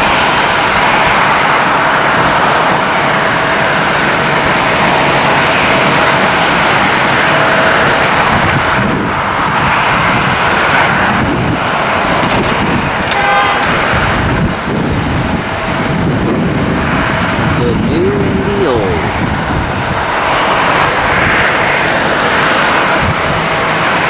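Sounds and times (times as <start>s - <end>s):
jet engines roaring: 0.0s - 24.0s
horn-like toot: 13.1s - 13.8s.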